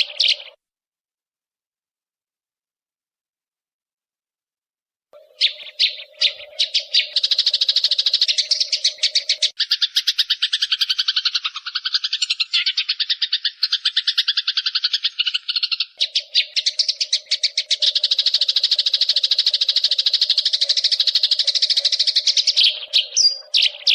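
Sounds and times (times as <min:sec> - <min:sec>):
sparrow chattering call: 0:00.0 - 0:00.6, 0:05.2 - 0:23.9.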